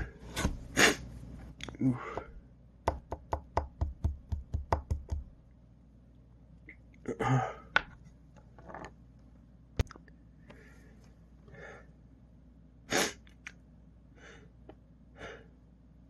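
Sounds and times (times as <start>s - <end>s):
breathy voiced sound: 0.0s - 2.5s, 6.7s - 7.8s, 10.4s - 12.0s, 15.2s - 15.6s.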